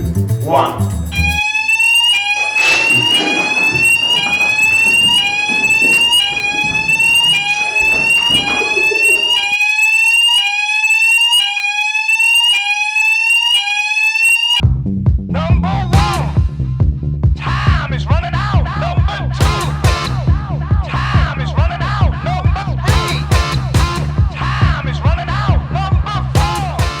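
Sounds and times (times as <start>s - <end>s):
music: 0.0s - 1.4s, 14.6s - 27.0s
fire alarm sweeping tone: 1.1s - 14.6s.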